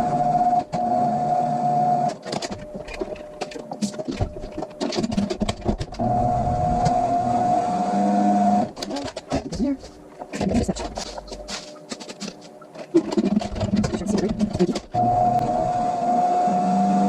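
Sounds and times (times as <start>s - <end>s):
salad spinner motor whine: 0.0s - 4.7s, 6.0s - 8.8s, 14.9s - 17.0s
plastic clicks and rattles: 8.8s - 15.0s.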